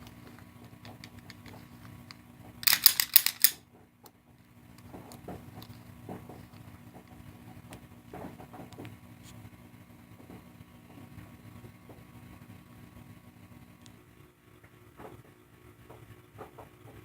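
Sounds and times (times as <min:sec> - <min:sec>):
pistol metallic clacks: 0:02.6 - 0:03.6.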